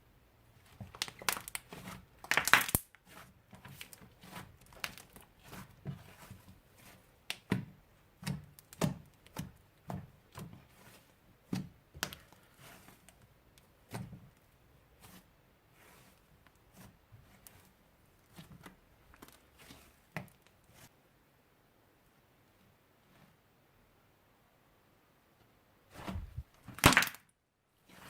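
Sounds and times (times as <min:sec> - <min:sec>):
slime and plastic packaging crackling: 0:00.6 - 0:20.9, 0:26.0 - 0:27.3.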